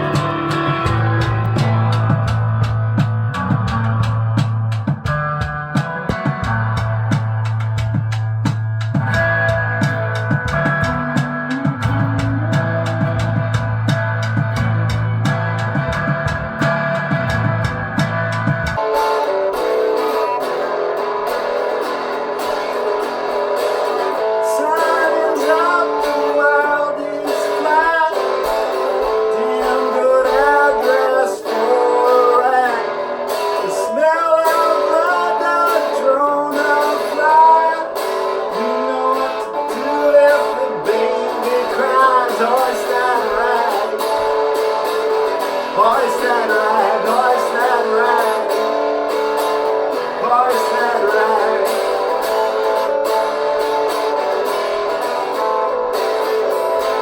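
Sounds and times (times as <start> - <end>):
bass-heavy music: 0.0 - 21.6
live band music led by guitar: 0.0 - 57.0.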